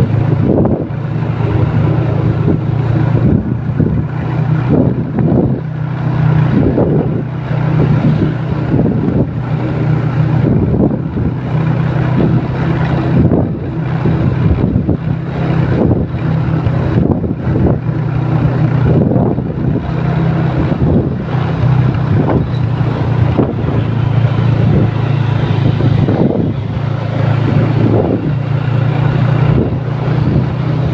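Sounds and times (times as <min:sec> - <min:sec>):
bus engine drone: 0:00.0 - 0:30.9
wind noise on microphone: 0:00.0 - 0:30.9.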